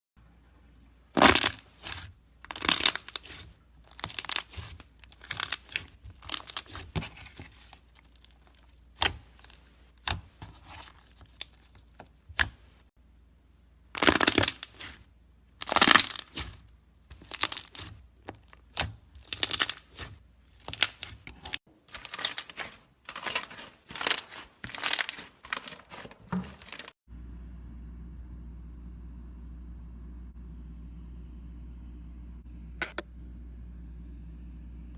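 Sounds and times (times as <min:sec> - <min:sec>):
slime crackling: 0:01.2 - 0:12.8, 0:14.0 - 0:27.0
steady low hum: 0:27.1 - 0:34.9.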